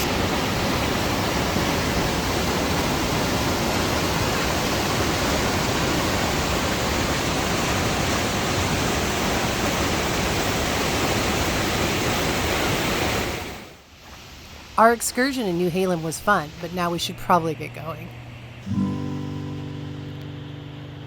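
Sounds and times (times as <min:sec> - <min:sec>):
waterfall roaring: 0:00.0 - 0:13.8.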